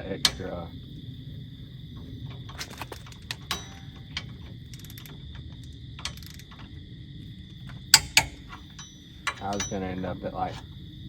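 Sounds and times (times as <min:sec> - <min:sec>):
steady low hum: 0:00.0 - 0:11.0
metallic clicks of hand tools: 0:00.2 - 0:00.6, 0:02.4 - 0:06.8, 0:07.5 - 0:09.9.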